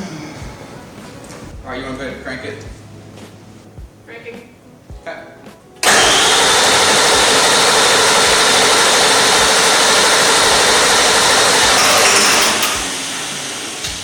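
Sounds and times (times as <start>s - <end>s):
diesel engine cranking: 5.8s - 14.0s.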